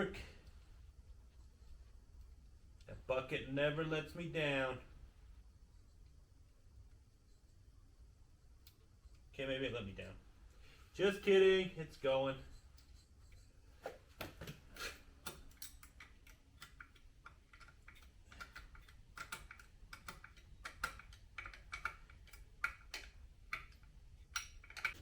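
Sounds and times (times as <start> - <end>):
metal tool clicks and taps: 15.2 - 25.0.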